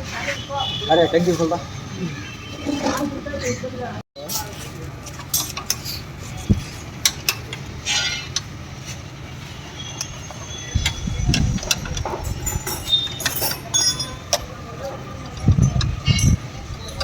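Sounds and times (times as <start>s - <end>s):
metal hand tools clinking: 11.8s - 14.4s.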